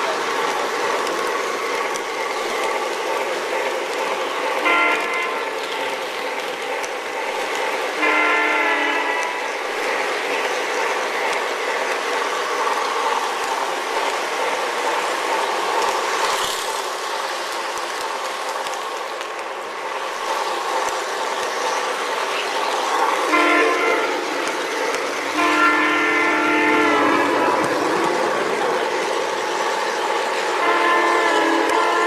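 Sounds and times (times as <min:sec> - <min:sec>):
model trains rolling on track: 0:00.0 - 0:32.0
locomotive horn blasts: 0:04.6 - 0:05.5, 0:08.0 - 0:09.4, 0:23.3 - 0:24.3, 0:25.3 - 0:27.6, 0:30.6 - 0:32.0.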